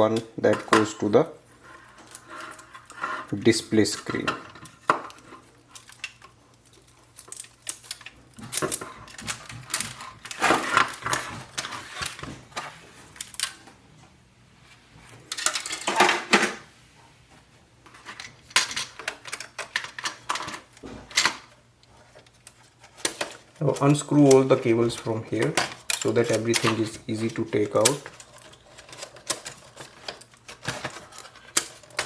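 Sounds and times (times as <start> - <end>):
plastic clicks and clatter: 4.0 - 13.7, 17.9 - 32.0.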